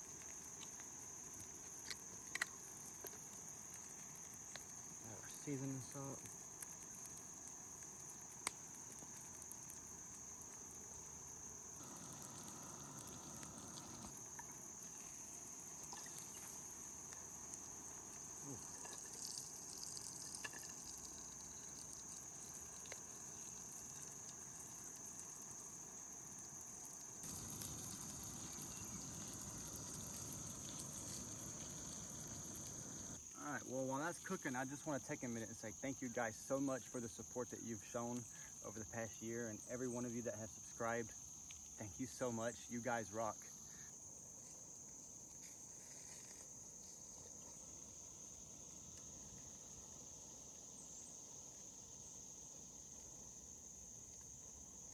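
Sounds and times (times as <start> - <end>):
fish frying in hot oil: 0.0 - 33.2.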